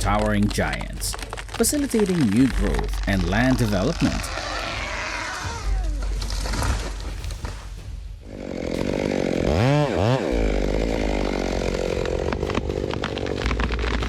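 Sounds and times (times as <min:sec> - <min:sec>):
chainsaw engine revving: 0:02.2 - 0:07.0, 0:08.3 - 0:14.0.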